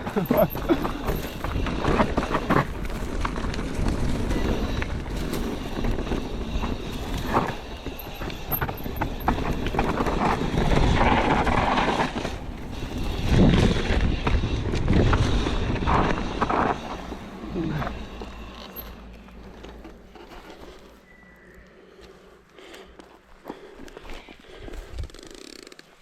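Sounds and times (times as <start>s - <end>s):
wind rumbling on microphone: 0.0s - 18.3s, 24.6s - 25.3s
bike rattling: 0.0s - 26.0s
tyres crunching on dirt: 0.0s - 26.0s.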